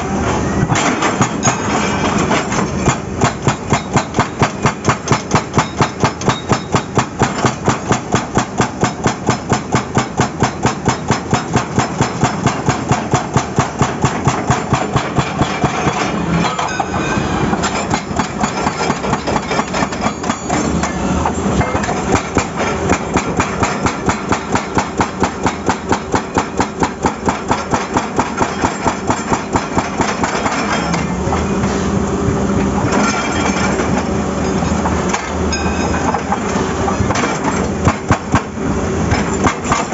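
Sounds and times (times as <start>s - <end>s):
excavator engine running: 0.0s - 39.9s
hydraulic breaker hammering asphalt: 0.6s - 31.5s, 34.8s - 39.9s.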